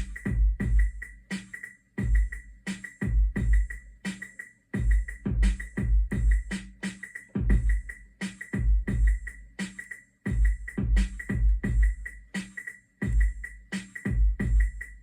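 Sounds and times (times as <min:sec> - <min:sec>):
deep kick drums: 0:00.0 - 0:01.0, 0:02.0 - 0:02.4, 0:03.0 - 0:03.8, 0:04.8 - 0:06.7, 0:07.4 - 0:07.9, 0:08.6 - 0:09.3, 0:10.3 - 0:12.1, 0:13.0 - 0:13.4, 0:14.1 - 0:14.8.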